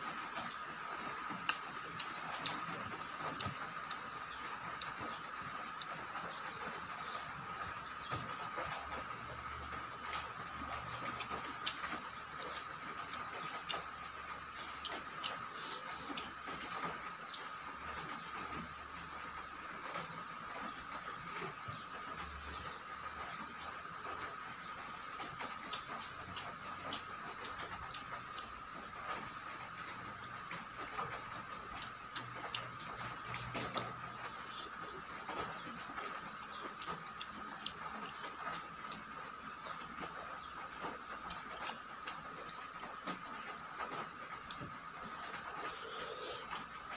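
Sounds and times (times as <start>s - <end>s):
steady high hum: 0.0s - 46.9s
person chewing: 1.3s - 4.1s, 10.1s - 18.7s, 22.1s - 37.8s, 41.2s - 46.8s.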